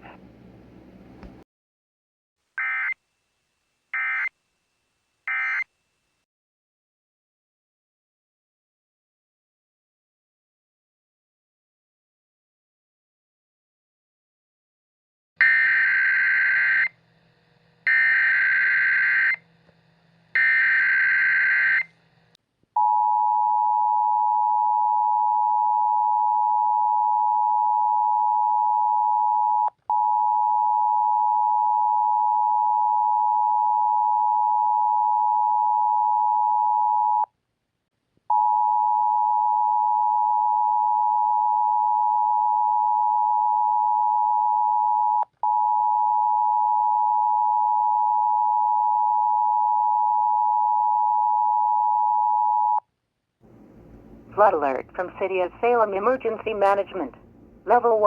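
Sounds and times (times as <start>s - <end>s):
steady warning alarm tone: 15.4s - 17.0s, 17.8s - 19.5s, 20.3s - 22.0s.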